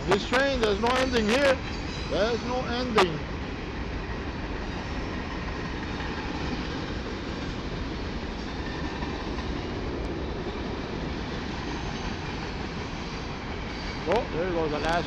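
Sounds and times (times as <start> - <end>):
freight train wheels rumbling on rails: 0.0 - 15.0.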